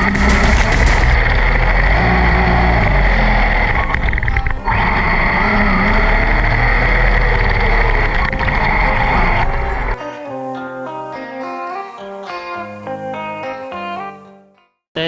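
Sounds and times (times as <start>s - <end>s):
electric motor whine: 0.0s - 10.0s.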